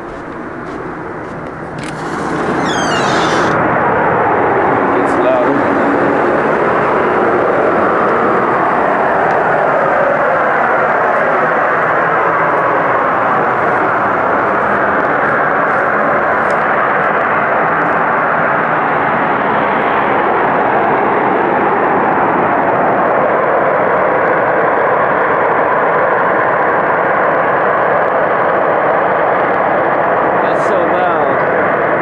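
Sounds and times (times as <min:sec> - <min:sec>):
loud mechanical drone: 0:00.0 - 0:23.9.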